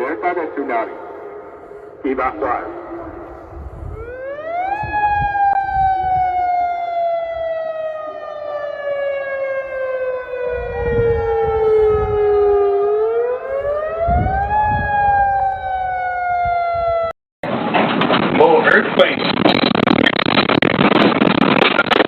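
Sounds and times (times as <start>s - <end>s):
warning siren wailing: 0.0s - 17.2s.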